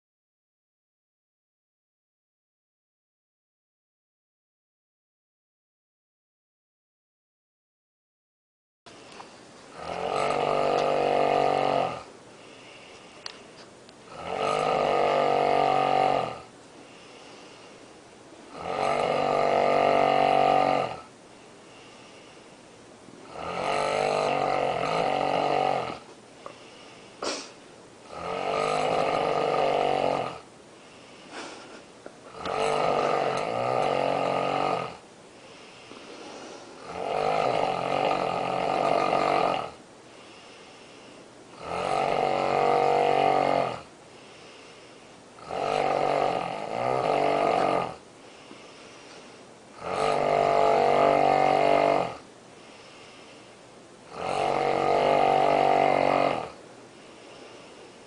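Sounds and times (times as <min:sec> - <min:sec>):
quiet breaths: 0:08.9 - 0:58.0
woman snoring loudly: 0:09.7 - 0:12.9, 0:14.1 - 0:17.6, 0:18.5 - 0:21.1, 0:23.2 - 0:35.0, 0:36.2 - 0:40.6, 0:41.6 - 0:44.8, 0:45.4 - 0:48.6, 0:49.8 - 0:53.3, 0:54.1 - 0:57.8.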